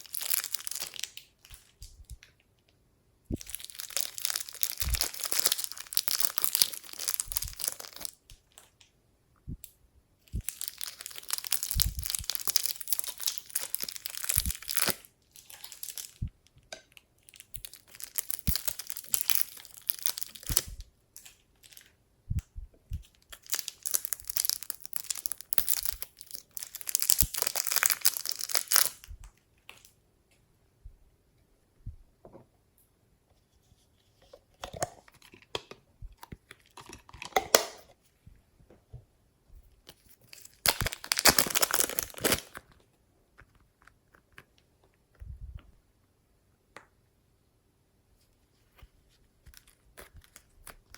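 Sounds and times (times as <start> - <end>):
slime squished by hand: 3.3 - 8.5, 10.3 - 16.2.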